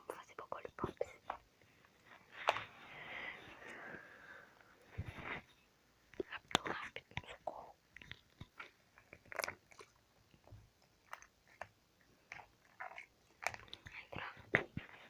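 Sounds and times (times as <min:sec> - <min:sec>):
slime squelching: 0:06.2 - 0:15.0.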